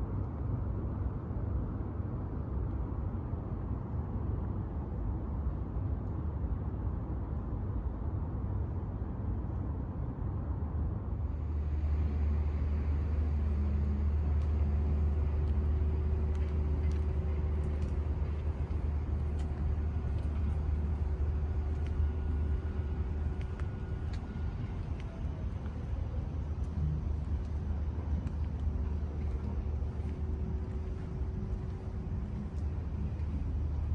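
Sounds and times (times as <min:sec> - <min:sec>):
distant traffic rumble: 0:11.2 - 0:33.9
light ticks: 0:14.2 - 0:25.8, 0:26.6 - 0:33.9.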